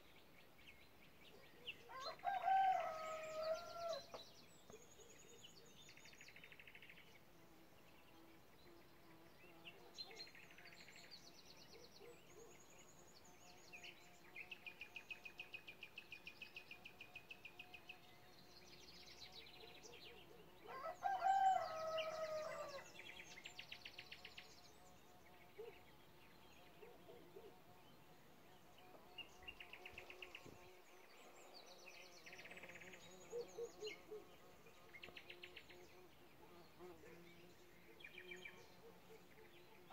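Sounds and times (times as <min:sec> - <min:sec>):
rooster crowing: 0:01.9 - 0:04.0, 0:20.7 - 0:22.8
songbirds singing buzzy trills: 0:21.3 - 0:39.9.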